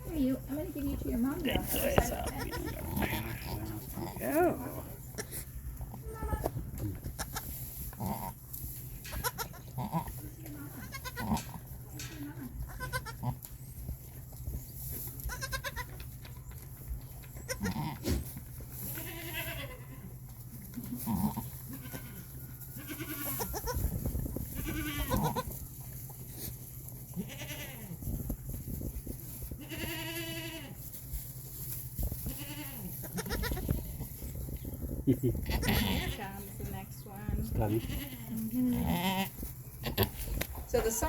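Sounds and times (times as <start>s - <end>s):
goats bleating: 1.5s - 5.4s, 9.1s - 11.6s, 12.6s - 13.5s, 15.2s - 16.0s, 17.4s - 20.2s, 20.8s - 23.8s, 24.5s - 25.6s, 27.1s - 28.0s, 29.6s - 30.8s, 32.3s - 34.0s, 35.4s - 36.4s, 37.5s - 40.2s.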